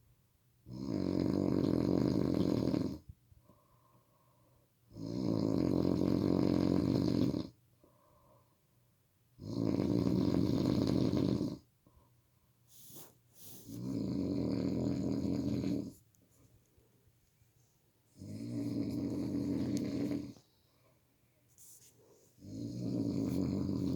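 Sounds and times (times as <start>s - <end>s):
person snoring loudly: 0.7s - 3.0s, 4.9s - 7.5s, 9.4s - 11.6s, 13.7s - 16.0s, 18.2s - 20.4s, 22.4s - 23.9s.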